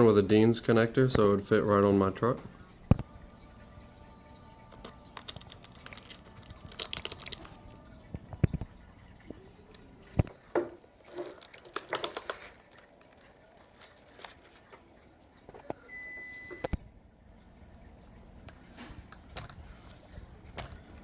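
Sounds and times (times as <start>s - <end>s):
plastic clicks: 4.7s - 7.6s.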